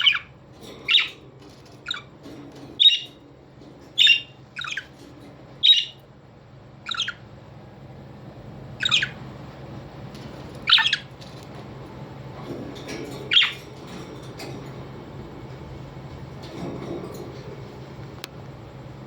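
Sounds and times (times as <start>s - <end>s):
parrot squawking: 0.0s - 0.3s, 4.0s - 4.9s, 5.6s - 6.0s, 6.8s - 7.2s, 8.8s - 9.2s, 10.6s - 11.1s.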